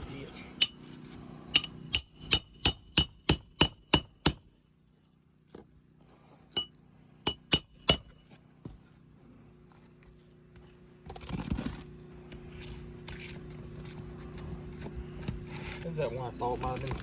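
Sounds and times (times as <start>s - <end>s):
hammer striking nail: 1.6s - 4.5s, 7.3s - 8.2s.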